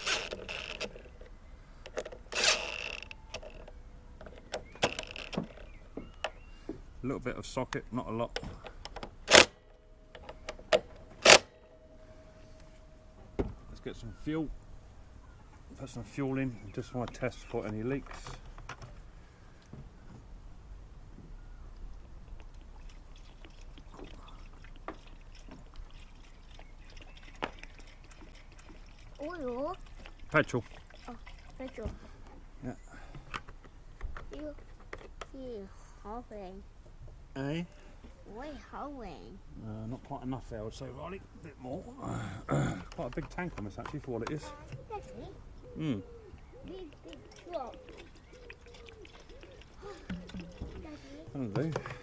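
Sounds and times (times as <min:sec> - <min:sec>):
socket tool running in bolts: 0:02.3 - 0:03.6
petrol pouring and sloshing: 0:22.7 - 0:32.2
fuel can clicks and knocks: 0:50.0 - 0:50.7.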